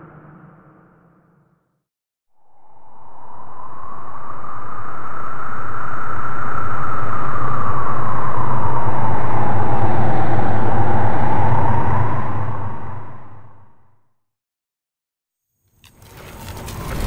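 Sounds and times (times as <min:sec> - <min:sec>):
howling wind with whistle: 0:02.3 - 0:14.0.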